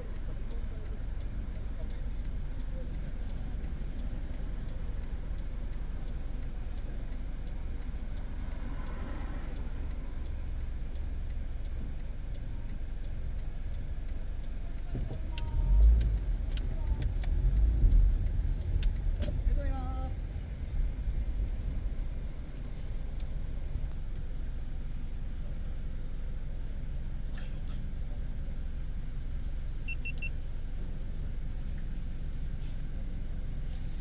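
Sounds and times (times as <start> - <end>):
car engine and cabin rumbling: 0.0 - 34.0
faint regular ticking: 0.0 - 34.0
louder low rumble: 15.0 - 23.9.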